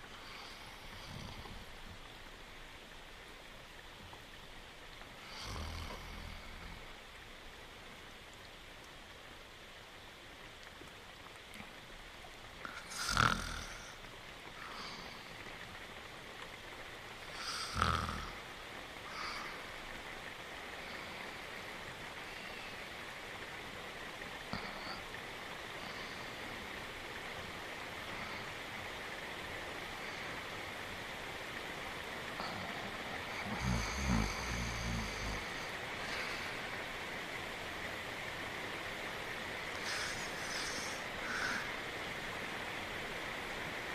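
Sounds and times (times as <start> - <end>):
rain hissing: 0.0 - 43.9
cartoon dog snoring: 12.8 - 13.8, 33.4 - 35.4
faint breathing: 14.6 - 15.6, 19.0 - 19.9, 20.6 - 23.1, 24.5 - 26.8, 29.9 - 30.8, 32.3 - 36.9, 39.7 - 42.0.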